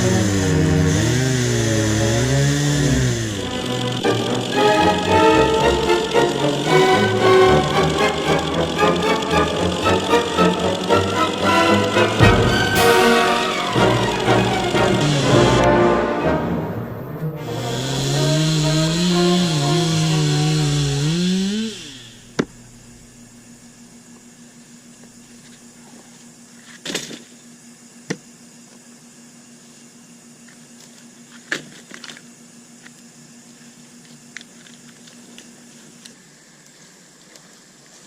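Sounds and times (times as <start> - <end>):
background music: 3.0 - 20.8.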